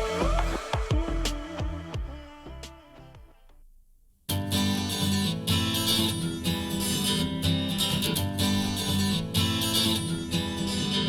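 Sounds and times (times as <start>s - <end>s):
acoustic guitar strumming: 4.3s - 11.0s.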